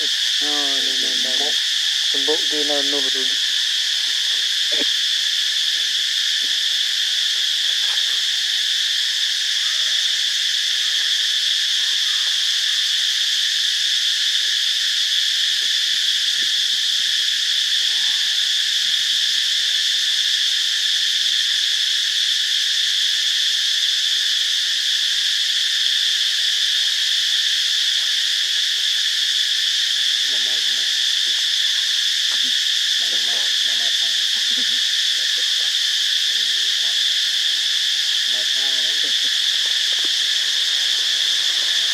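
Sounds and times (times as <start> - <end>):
high-pitched insect chorus: 0.0 - 41.9
faint voices: 4.7 - 4.9, 32.3 - 37.2, 38.2 - 41.9.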